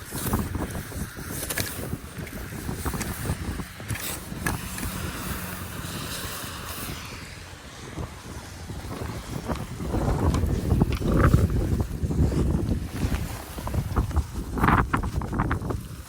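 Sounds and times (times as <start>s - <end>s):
wind gusting against microphone: 0.0s - 16.0s.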